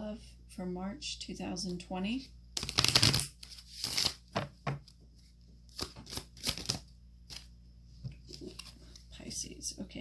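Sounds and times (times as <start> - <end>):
cards shuffling: 2.6 - 5.0, 5.7 - 7.5.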